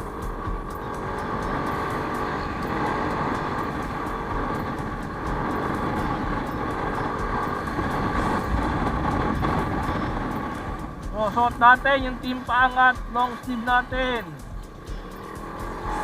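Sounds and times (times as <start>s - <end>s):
road noise: 0.0s - 16.0s
scooter engine rumble: 0.0s - 16.0s
wind on microphone: 1.6s - 11.2s.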